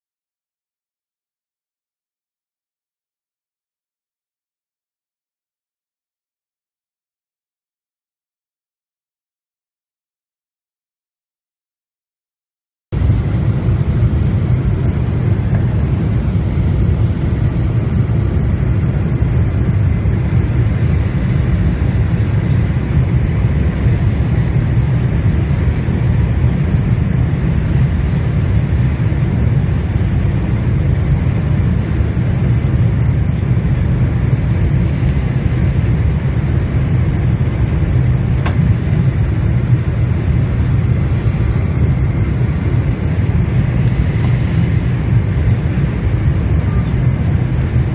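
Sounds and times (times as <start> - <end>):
aircraft cabin engine rumble: 13.0 - 47.9.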